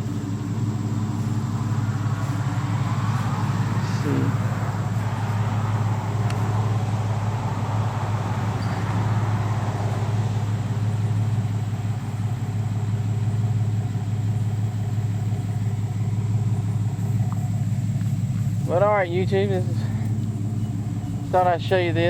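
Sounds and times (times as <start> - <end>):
broad rushing noise: 0.0 - 10.6
truck engine idling: 0.0 - 22.0.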